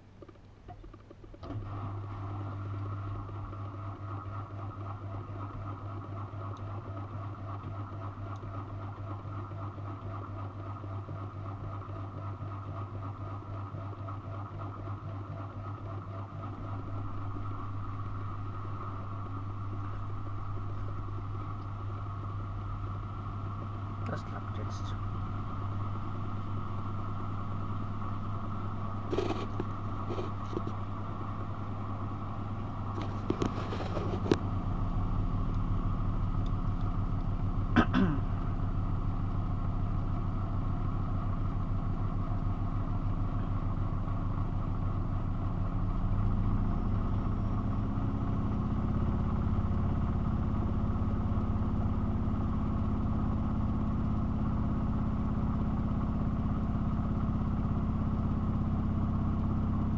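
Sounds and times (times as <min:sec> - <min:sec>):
washing machine drum motor running: 0:02.7 - 0:24.2, 0:25.0 - 0:59.9.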